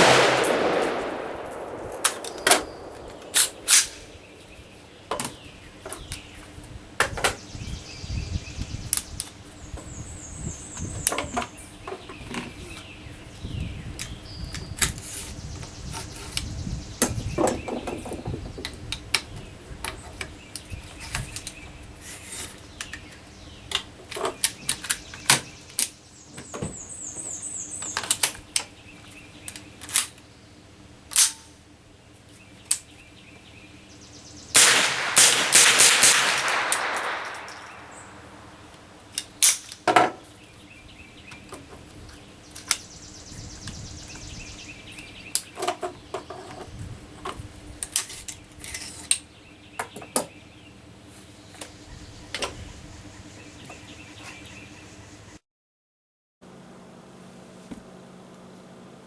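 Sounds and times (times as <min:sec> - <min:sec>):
rifle clicks: 0:00.0 - 0:04.2, 0:34.6 - 0:39.8
rifle shots: 0:00.0 - 0:05.0, 0:34.6 - 0:39.6
birds chirping: 0:00.0 - 0:30.9, 0:31.6 - 0:55.4.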